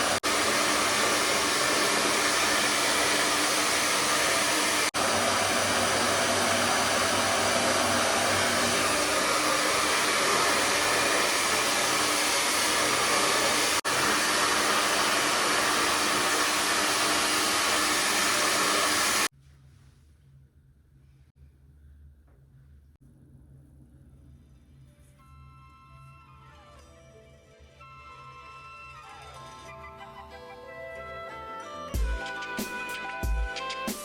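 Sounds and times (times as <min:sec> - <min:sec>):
hair dryer blowing: 0:00.0 - 0:19.3.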